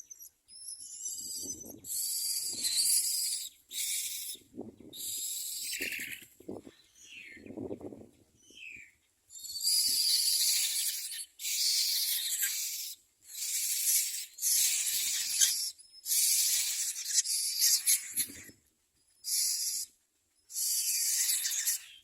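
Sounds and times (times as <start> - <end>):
nestlings hissing begging calls: 0.9 - 4.4, 5.0 - 6.2, 9.4 - 18.5, 19.2 - 19.9, 20.5 - 22.0.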